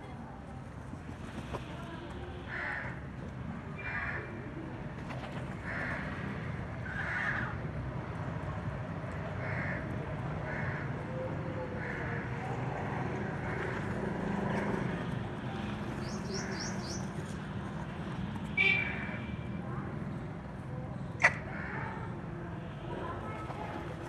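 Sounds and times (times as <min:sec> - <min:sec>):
crow cawing: 0:06.8 - 0:07.5, 0:09.4 - 0:09.8, 0:10.5 - 0:10.9
faint distant voices: 0:19.2 - 0:24.0.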